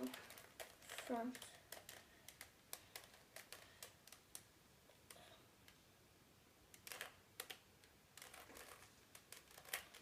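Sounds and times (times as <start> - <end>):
puzzle cube layers clicking: 0.0 - 5.8, 6.7 - 10.0.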